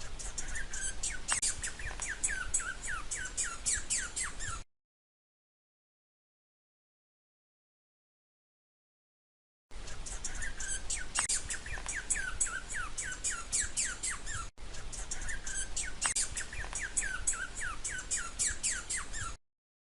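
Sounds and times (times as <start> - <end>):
squirrel chirping: 0.0 - 4.6, 9.8 - 19.4.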